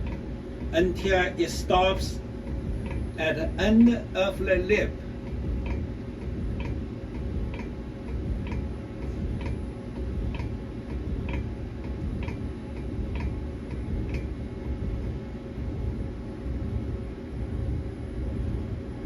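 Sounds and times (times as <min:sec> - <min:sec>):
low machine hum: 0:00.0 - 0:19.0
light ticks of stylus probe: 0:05.2 - 0:08.7, 0:09.4 - 0:09.6, 0:10.3 - 0:14.3.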